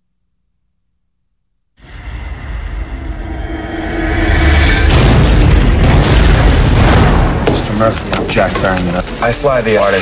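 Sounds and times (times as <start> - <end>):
trailer music: 1.8 - 8.1
deep boom and rumble: 2.1 - 8.2.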